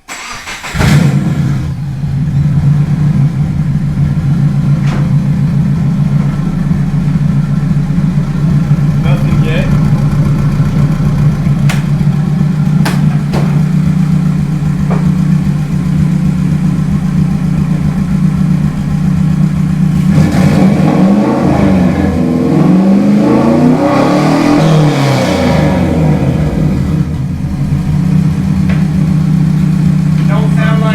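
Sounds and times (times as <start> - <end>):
turbo car engine revving: 0.0 - 30.9.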